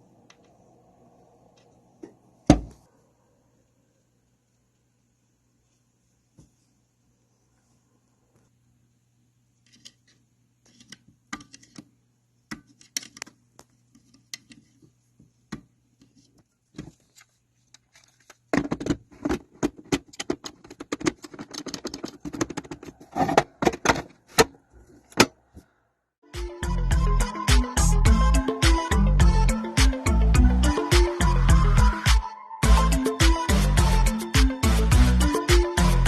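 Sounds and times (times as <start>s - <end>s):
faint steady hum: 0.0s - 19.2s.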